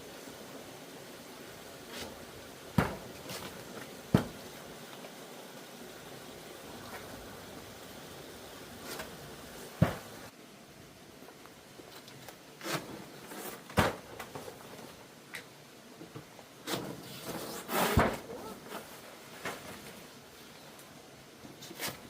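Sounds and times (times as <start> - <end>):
rustling and scraping: 1.7 - 5.2, 8.7 - 10.3, 11.3 - 22.0.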